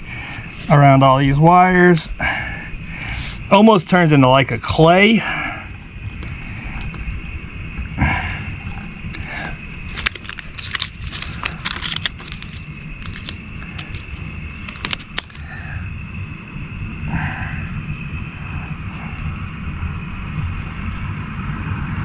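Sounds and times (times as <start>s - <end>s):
steady low rumble: 0.0s - 22.0s
tape crackling and clicking: 5.7s - 15.6s.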